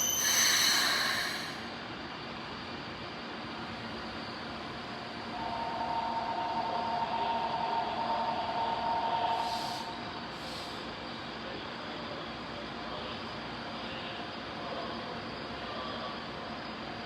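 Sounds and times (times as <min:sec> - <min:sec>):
air hisses: 0:00.0 - 0:01.7
electric train rumbling: 0:00.0 - 0:13.6.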